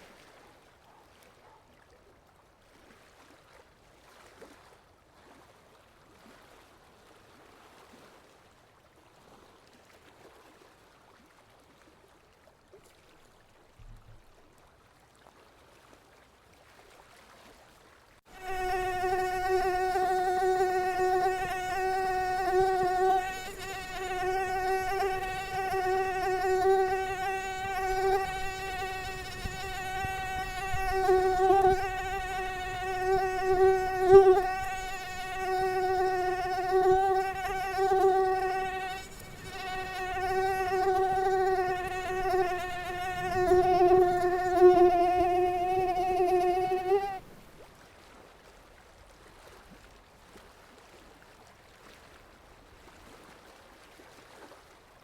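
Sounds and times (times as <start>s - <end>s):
mosquito whine: 18.3s - 47.2s.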